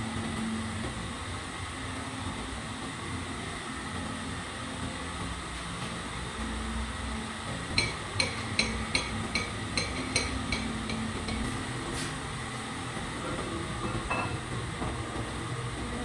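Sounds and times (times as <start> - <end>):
steady low hum: 0.0 - 16.0
hammer striking metal: 7.7 - 11.6.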